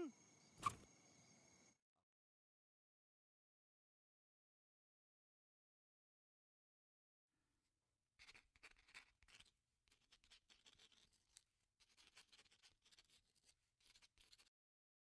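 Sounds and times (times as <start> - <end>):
pen scratching on paper: 8.2 - 14.5.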